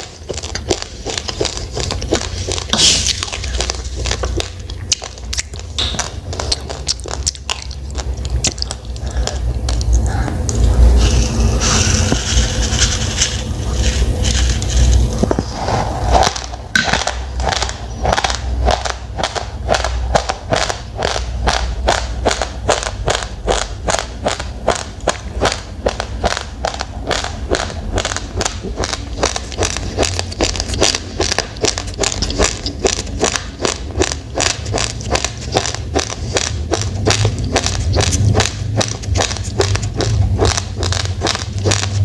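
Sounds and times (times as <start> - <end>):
person chewing crunchy rice: 0.0 - 42.0.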